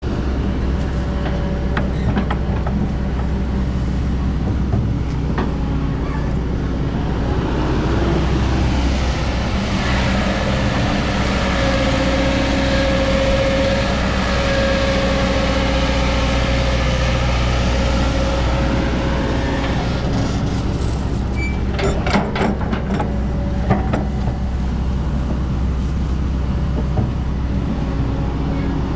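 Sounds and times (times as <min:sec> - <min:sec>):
excavator diesel engine: 0:00.0 - 0:28.9
high steady whine: 0:05.4 - 0:21.6
sharp knocks and clanks: 0:21.7 - 0:24.4.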